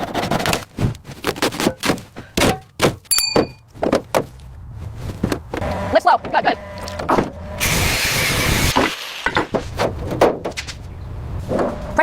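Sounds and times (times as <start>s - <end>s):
hard knocks and thunks: 1.6s - 4.3s, 9.4s - 10.7s.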